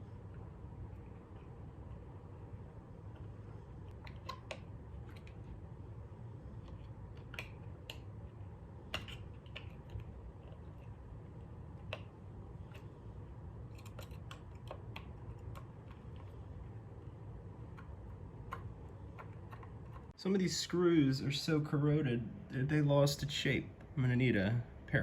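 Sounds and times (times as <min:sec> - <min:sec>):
low steady hum: 0:00.0 - 0:25.0
screwdriver clicking on metal parts: 0:13.7 - 0:16.3.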